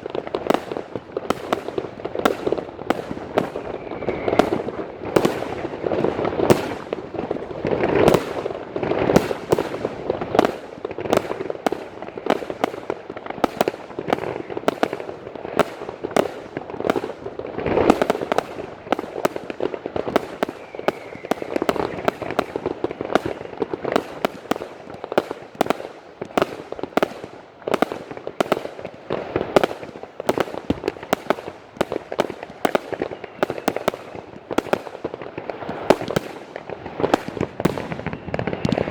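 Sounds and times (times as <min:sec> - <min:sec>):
firework crackling: 0:00.0 - 0:38.9
firework aerial bursts: 0:13.5 - 0:38.9.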